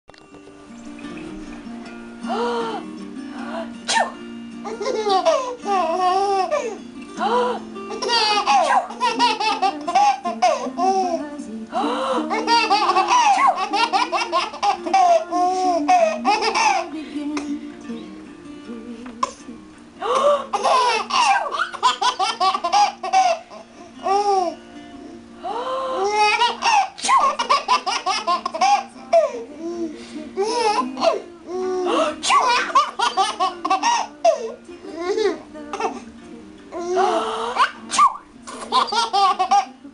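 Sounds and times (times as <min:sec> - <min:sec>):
baby laughing: 0:04.6 - 0:06.8, 0:07.4 - 0:11.2, 0:12.2 - 0:16.9, 0:20.5 - 0:24.6, 0:26.0 - 0:29.4, 0:31.8 - 0:36.0, 0:36.8 - 0:39.8.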